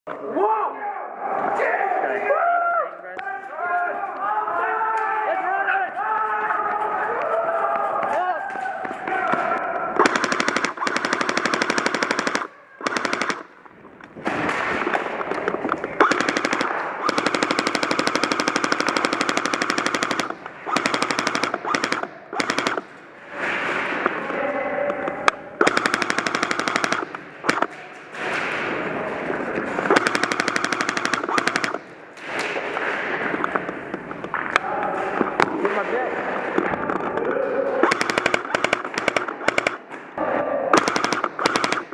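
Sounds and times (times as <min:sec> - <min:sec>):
airsoft guns firing rapidly: 0:09.0 - 0:13.6, 0:14.2 - 0:24.3, 0:25.6 - 0:33.6, 0:37.6 - 0:40.0, 0:40.7 - 0:41.9.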